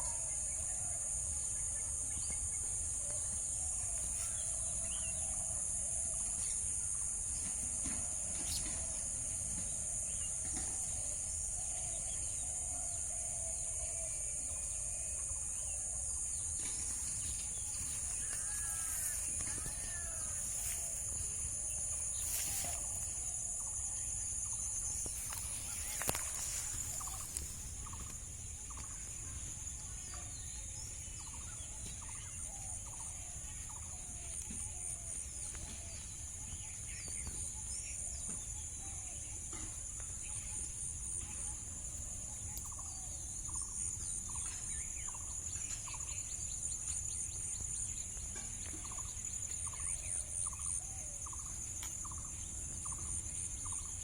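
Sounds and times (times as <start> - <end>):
high-pitched insect drone: 2.6 - 30.6.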